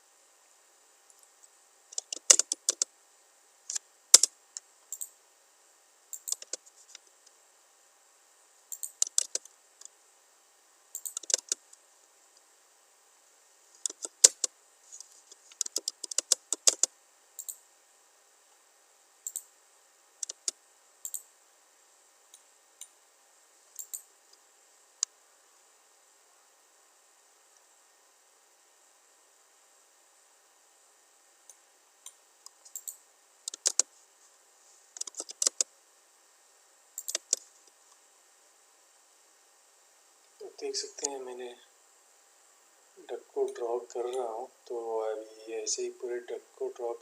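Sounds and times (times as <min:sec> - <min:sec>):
computer keyboard typing: 0:02.0 - 0:02.9, 0:06.2 - 0:06.6, 0:08.8 - 0:09.5, 0:11.0 - 0:11.6, 0:13.8 - 0:14.5, 0:15.5 - 0:17.6, 0:20.2 - 0:21.2, 0:32.7 - 0:33.9, 0:35.0 - 0:35.7, 0:37.0 - 0:37.4.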